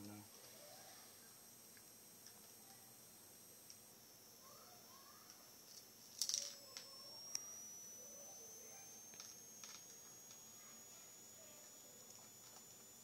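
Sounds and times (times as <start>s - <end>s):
screwdriver clicking on small screws: 9.1s - 10.6s, 11.6s - 12.9s.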